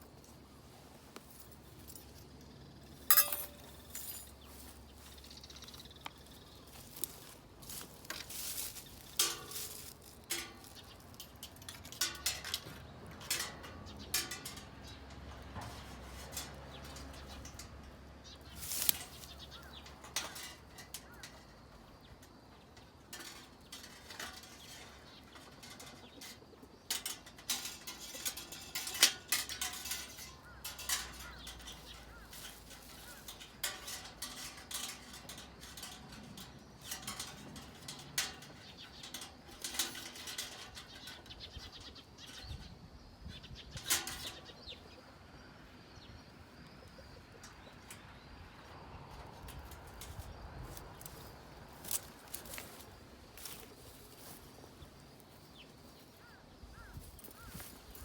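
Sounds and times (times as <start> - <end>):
metal clinks and knocks: 1.2 - 42.6, 47.4 - 54.8.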